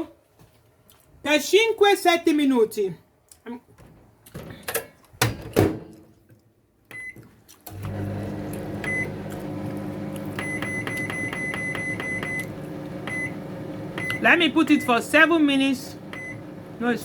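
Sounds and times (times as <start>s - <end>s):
keypad beeps: 6.9s - 7.2s, 8.8s - 9.1s, 10.4s - 12.5s, 13.1s - 13.4s, 14.0s - 15.0s, 16.1s - 16.4s
microwave beep: 6.9s - 7.2s, 7.8s - 15.3s, 16.0s - 16.7s
microwave oven humming: 7.7s - 17.0s.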